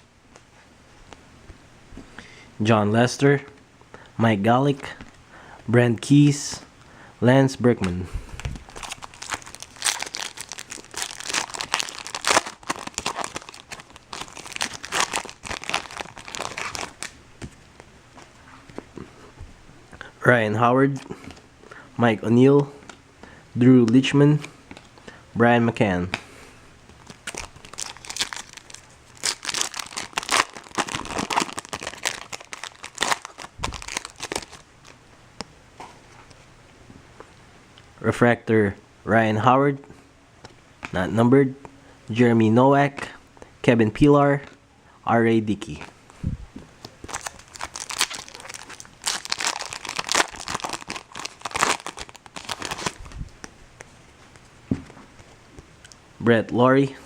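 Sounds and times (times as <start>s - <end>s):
foil wrapper tearing and crumpling: 8.7s - 17.2s, 27.0s - 35.0s, 47.0s - 53.2s.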